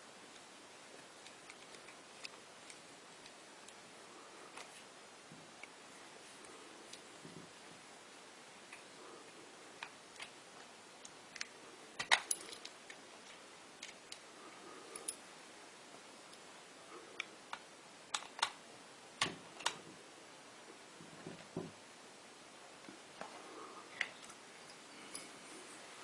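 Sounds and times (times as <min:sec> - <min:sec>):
small parts clicking and clinking: 0:01.0 - 0:03.8, 0:11.0 - 0:14.2, 0:14.9 - 0:15.2, 0:17.2 - 0:18.6.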